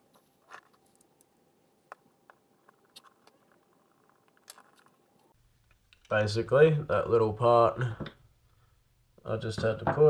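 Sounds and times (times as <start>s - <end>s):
small plastic parts clicking: 0.2s - 5.3s.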